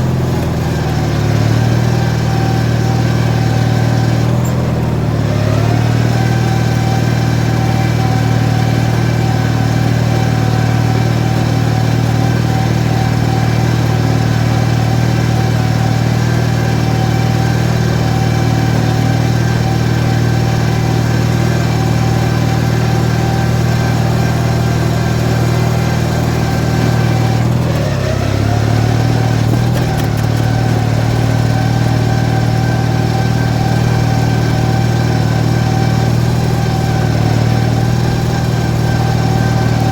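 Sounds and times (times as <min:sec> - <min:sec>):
riding mower engine running: 0:00.0 - 0:39.9.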